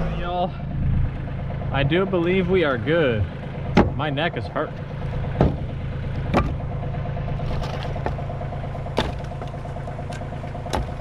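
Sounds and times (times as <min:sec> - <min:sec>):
engine idling: 0:00.0 - 0:11.0
sharp knocks: 0:03.7 - 0:04.0, 0:05.3 - 0:06.6, 0:08.9 - 0:09.6, 0:10.6 - 0:11.0.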